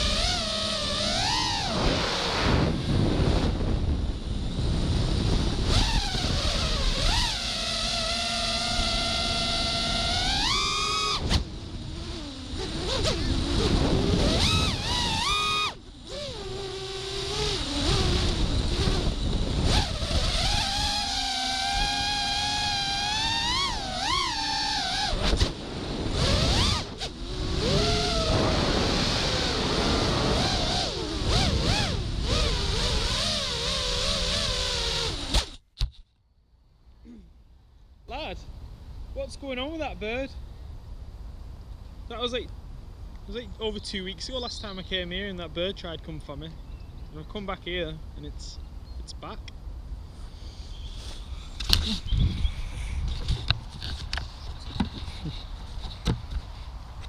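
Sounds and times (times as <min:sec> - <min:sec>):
rush of wind and propwash: 0:00.0 - 0:35.4
quadcopter motors whining: 0:00.0 - 0:35.7, 0:50.1 - 0:57.0.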